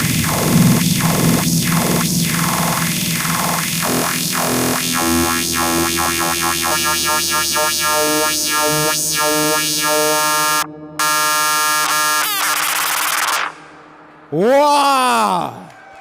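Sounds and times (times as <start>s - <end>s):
techno music: 0.0s - 13.7s.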